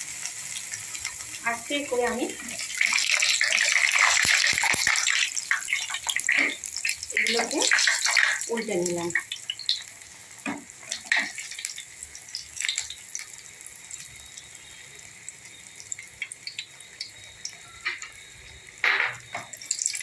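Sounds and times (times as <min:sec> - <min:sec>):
bread frying in hot oil: 0:00.0 - 0:20.0.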